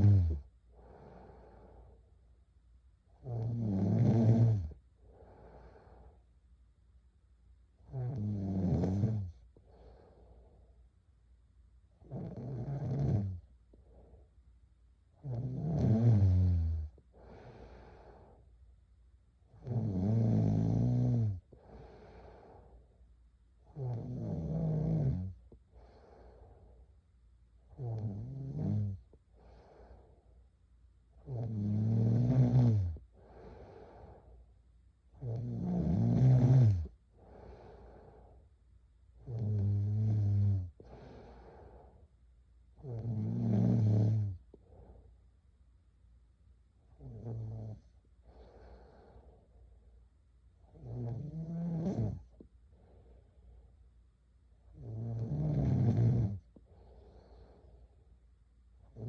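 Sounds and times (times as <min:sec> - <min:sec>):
girl snoring: 0:00.0 - 0:01.5, 0:03.2 - 0:04.8, 0:07.9 - 0:10.0, 0:12.0 - 0:13.4, 0:15.2 - 0:18.2, 0:19.6 - 0:22.6, 0:23.7 - 0:26.3, 0:27.7 - 0:29.9, 0:31.2 - 0:34.2, 0:35.2 - 0:38.1, 0:39.2 - 0:41.8, 0:42.8 - 0:44.4, 0:47.0 - 0:47.8, 0:50.7 - 0:52.4, 0:54.7 - 0:57.6
quiet breath: 0:00.0 - 0:59.0.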